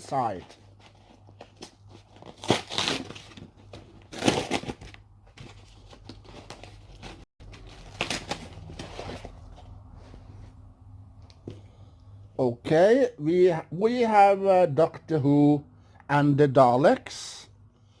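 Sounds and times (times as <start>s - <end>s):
packaging crumpling and tearing: 0.8s - 9.3s.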